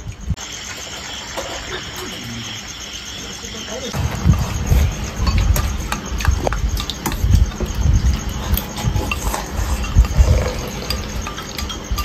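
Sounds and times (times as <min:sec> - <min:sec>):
bowls and spoons clicking: 0:08.2 - 0:12.0.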